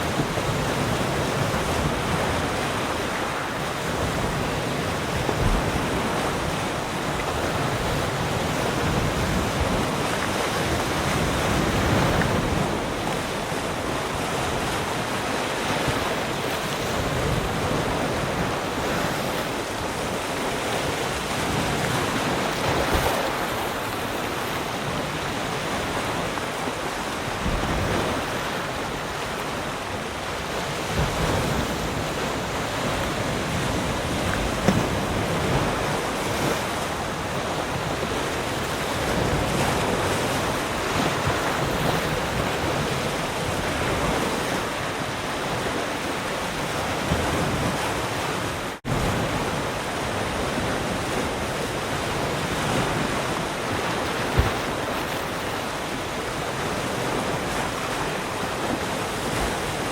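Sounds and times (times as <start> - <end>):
waves breaking on shore: 0.0 - 59.9
wind noise on microphone: 0.0 - 59.9.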